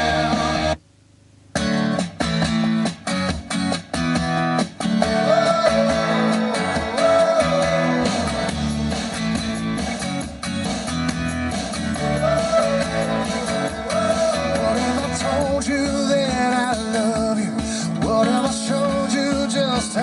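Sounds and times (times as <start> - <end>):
rock music through car stereo: 0.0 - 0.8, 1.4 - 20.0
person singing: 5.0 - 8.7, 11.9 - 20.0.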